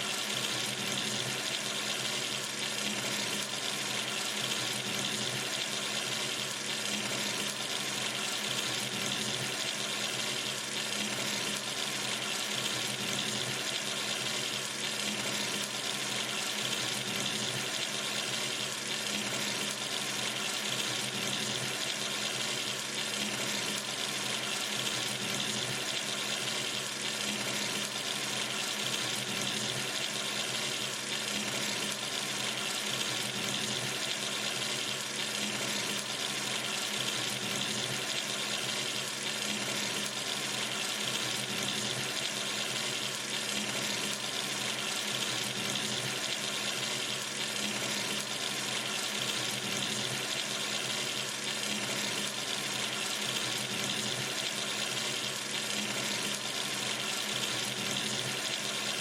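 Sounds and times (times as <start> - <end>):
water running from sink tap: 0.0 - 59.0.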